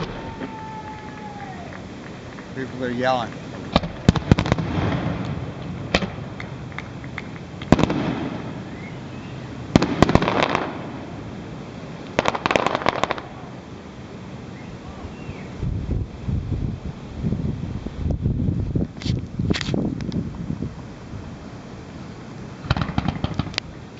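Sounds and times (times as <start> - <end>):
fireworks bursting: 0.0 - 13.8, 21.4 - 23.9
crackling rumble: 0.0 - 23.9.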